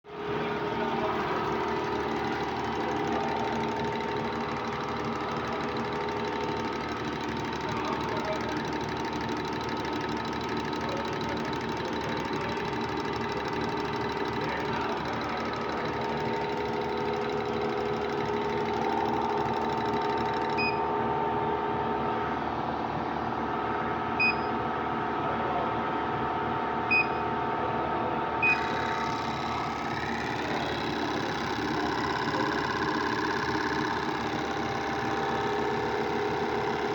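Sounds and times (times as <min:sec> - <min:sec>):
rapid mechanical clicking: 0:00.7 - 0:20.8, 0:28.5 - 0:36.9.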